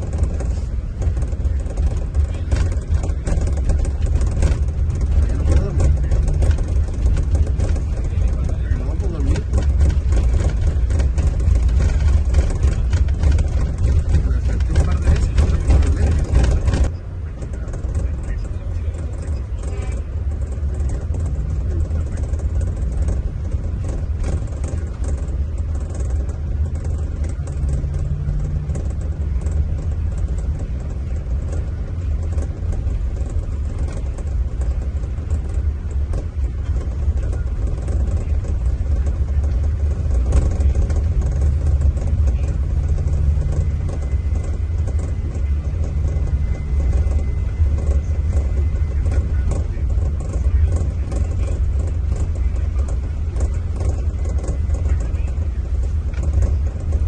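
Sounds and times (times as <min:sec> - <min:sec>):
diesel coach engine droning: 0:00.0 - 0:57.0
faint hum: 0:00.0 - 0:57.0.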